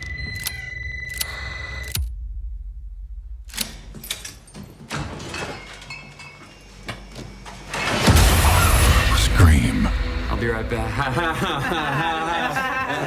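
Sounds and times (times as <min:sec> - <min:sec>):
clinking hits and crashes: 0:03.8 - 0:08.1
sharp hit: 0:07.8 - 0:12.4.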